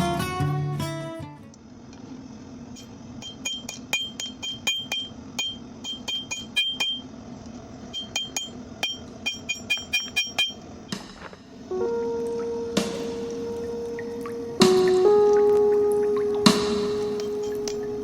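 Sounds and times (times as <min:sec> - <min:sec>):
hammer striking metal on anvil: 0:03.2 - 0:07.0, 0:08.0 - 0:10.6, 0:16.4 - 0:18.0.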